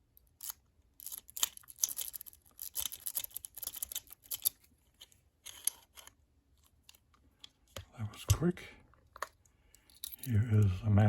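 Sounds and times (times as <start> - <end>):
lock pick scraping in lock: 0.4 - 6.2.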